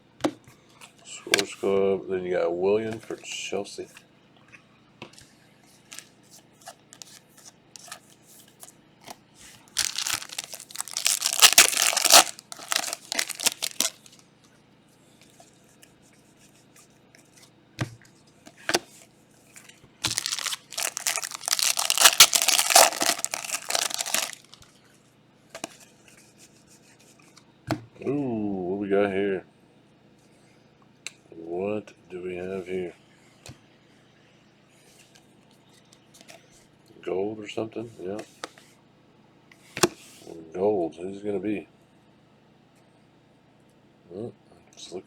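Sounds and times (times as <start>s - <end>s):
wrappers tearing and crinkling: 9.7s - 14.2s, 20.0s - 24.6s.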